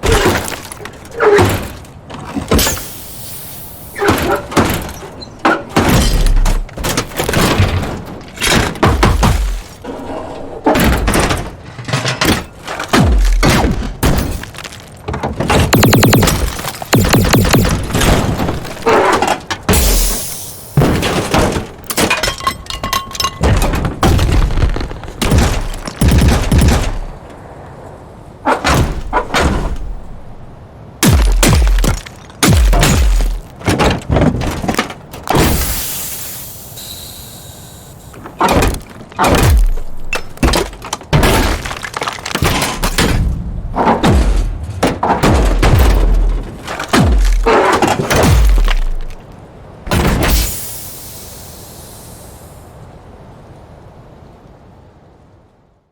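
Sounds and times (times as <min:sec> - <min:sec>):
background ambience: 0:00.0 - 0:55.2
heavy metal clanks and hits: 0:03.9 - 0:09.8, 0:10.6 - 0:24.6, 0:25.2 - 0:27.2, 0:31.0 - 0:36.0, 0:38.3 - 0:49.2
heavy metallic robot hits: 0:13.0 - 0:14.4, 0:15.8 - 0:18.8, 0:19.7 - 0:21.1, 0:31.0 - 0:33.6, 0:38.6 - 0:40.1, 0:45.2 - 0:49.2, 0:49.9 - 0:51.4.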